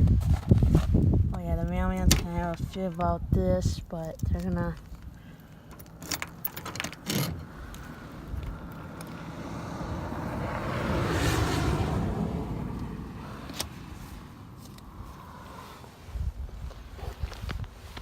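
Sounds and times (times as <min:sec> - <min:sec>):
car driving past: 0:07.8 - 0:15.8.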